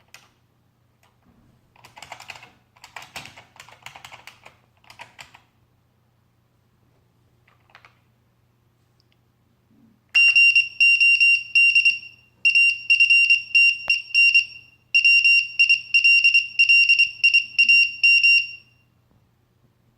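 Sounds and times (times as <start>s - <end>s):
morse code beeping: 10.2s - 18.7s.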